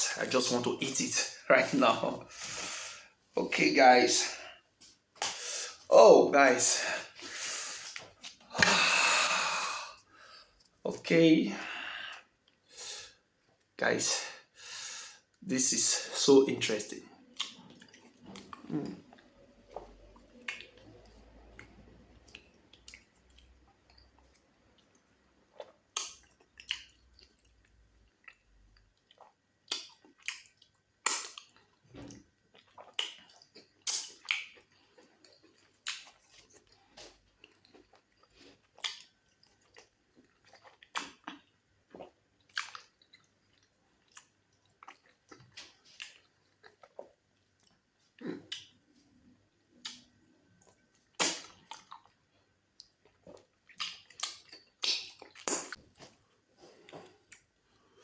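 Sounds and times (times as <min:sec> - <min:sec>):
wet chewing and lip smacks: 0:17.2 - 0:47.8, 0:48.5 - 0:48.8, 0:49.8 - 0:56.2.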